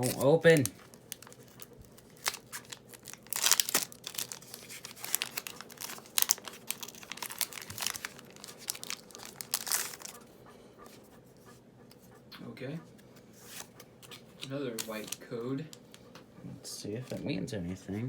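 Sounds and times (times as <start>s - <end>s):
foil wrapper crinkling and tearing: 0.0s - 10.2s, 14.8s - 15.3s.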